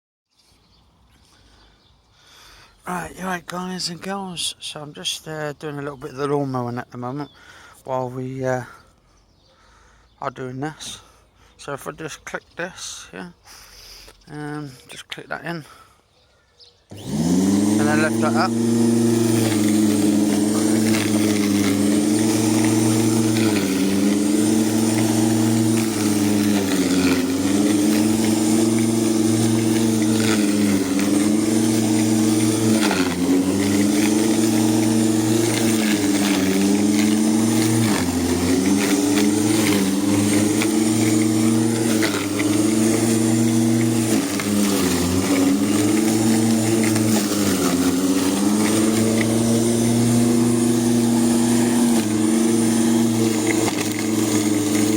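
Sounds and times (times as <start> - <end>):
lawn mower cutting grass: 2.4 - 8.8, 16.9 - 54.9.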